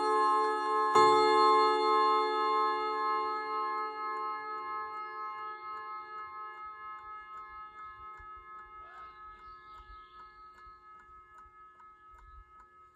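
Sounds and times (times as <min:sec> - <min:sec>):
clock chime rods ringing: 0:00.0 - 0:12.9.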